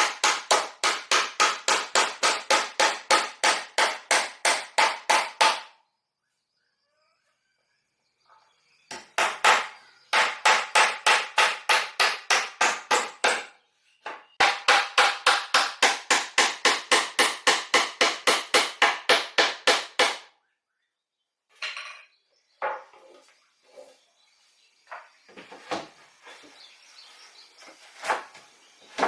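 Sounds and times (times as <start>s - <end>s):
hammer striking wood: 0.0s - 5.8s, 8.9s - 13.5s, 14.1s - 20.3s.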